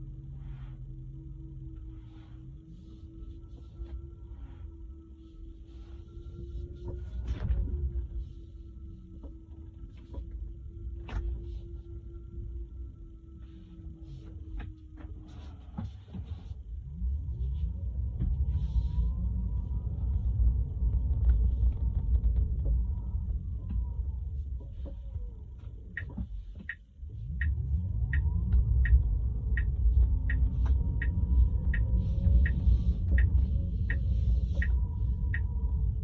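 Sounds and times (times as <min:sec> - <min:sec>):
heavy low rumble: 0:00.0 - 0:36.0.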